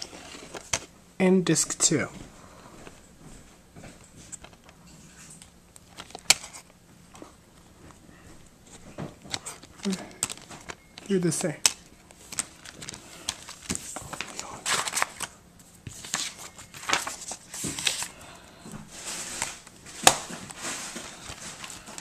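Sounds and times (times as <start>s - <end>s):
packaging rustling and scraping: 0.0s - 0.9s, 4.1s - 8.0s, 8.6s - 18.2s, 18.8s - 22.0s.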